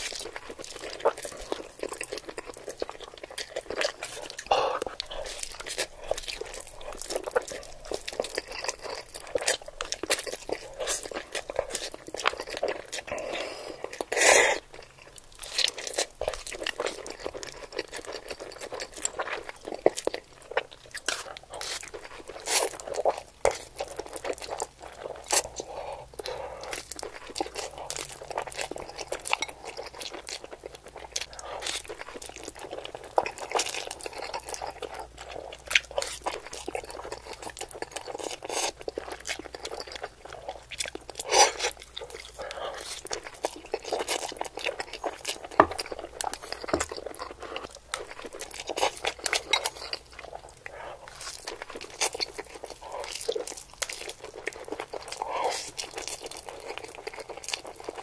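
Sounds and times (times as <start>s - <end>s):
crisp crunching and crackles: 26.2s - 58.0s.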